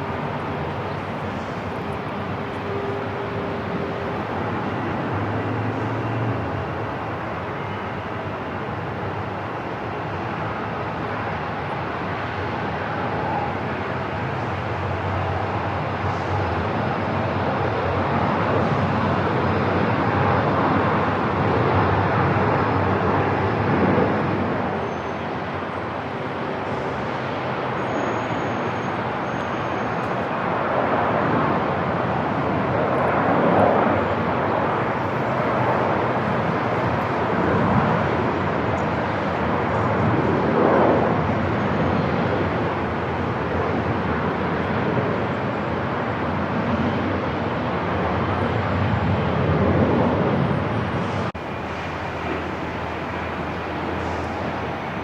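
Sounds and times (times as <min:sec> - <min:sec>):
airport ambience: 0:00.0 - 0:55.0.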